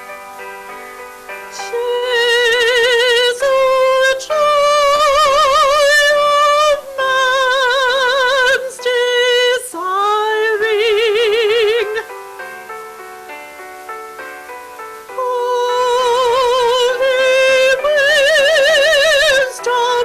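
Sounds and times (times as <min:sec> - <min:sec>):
woman singing with vibrato: 0:01.5 - 0:12.2, 0:15.1 - 0:20.0.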